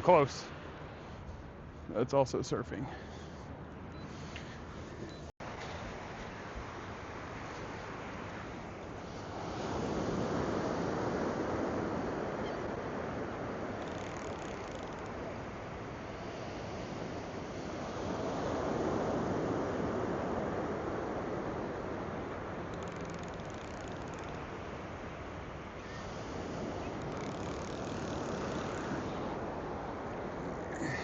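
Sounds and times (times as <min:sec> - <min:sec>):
ocean surf washing ashore: 0:05.4 - 0:31.0.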